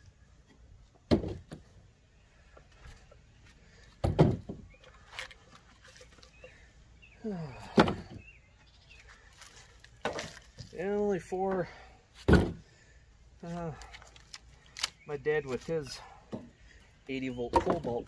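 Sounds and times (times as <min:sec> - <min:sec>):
wood pieces knocking down: 0:04.0 - 0:04.7, 0:10.0 - 0:10.7, 0:17.5 - 0:18.0.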